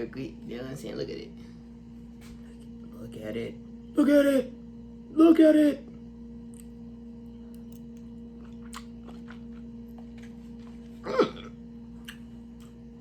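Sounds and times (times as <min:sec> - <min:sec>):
electrical hum: 0:00.0 - 0:13.0
person reacting vocally: 0:04.0 - 0:04.6
chewing crunches: 0:07.5 - 0:12.9.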